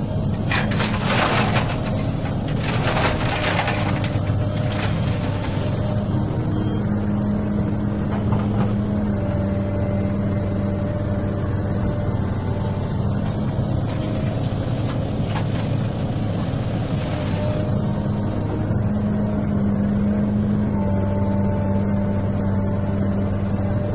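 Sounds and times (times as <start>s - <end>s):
diesel engine running: 0.0s - 23.9s.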